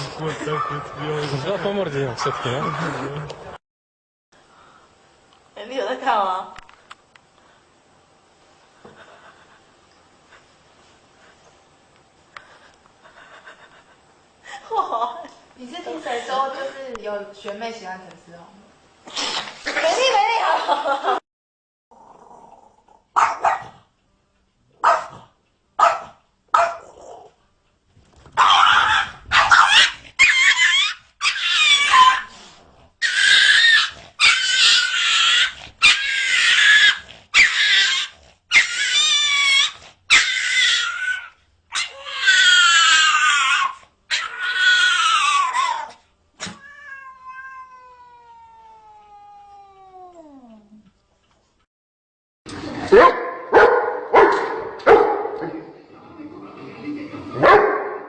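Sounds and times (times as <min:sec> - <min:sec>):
cats meowing and yowling: 0:28.5 - 0:32.3, 0:33.0 - 0:50.7.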